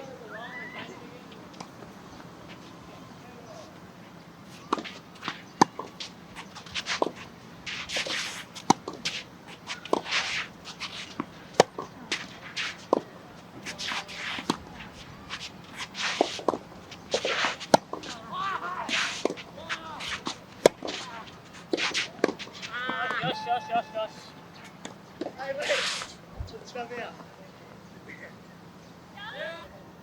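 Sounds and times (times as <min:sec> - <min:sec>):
shoes scuffing on court: 0:04.5 - 0:26.6.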